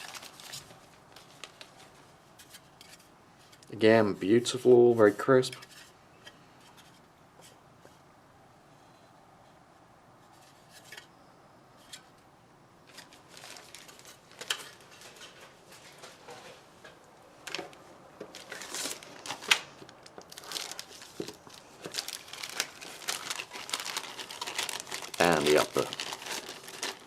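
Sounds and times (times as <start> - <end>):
plastic bag crinkling: 0.0 - 1.9, 12.8 - 15.2, 18.3 - 27.0
sharp plastic crackle: 0.0 - 1.9, 12.8 - 15.3, 17.4 - 27.0.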